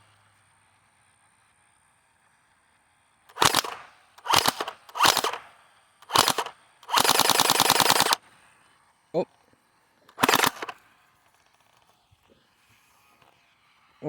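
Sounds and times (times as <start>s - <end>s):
gel blaster rapid shots: 3.3s - 8.2s, 10.2s - 10.8s.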